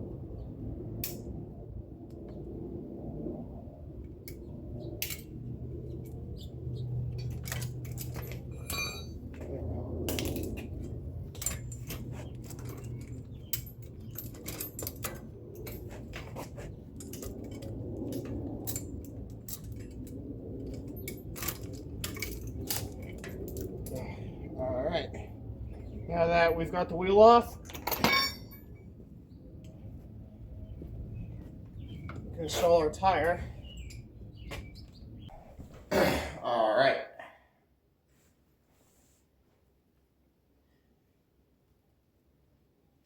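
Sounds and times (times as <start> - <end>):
low steady hum: 0.0 - 36.8
metal tools clinking: 7.1 - 9.5, 10.1 - 24.1, 27.5 - 28.9.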